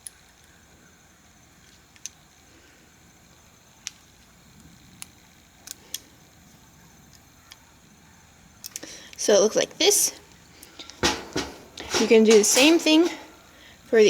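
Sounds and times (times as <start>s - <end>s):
wire bending clicks: 10.6s - 13.4s.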